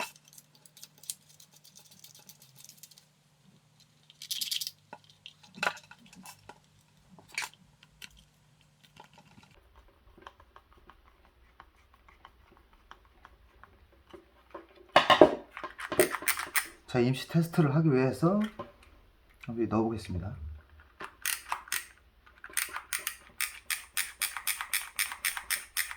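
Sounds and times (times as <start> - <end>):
plastic and metal parts clicking: 15.5 - 16.8, 20.8 - 25.9.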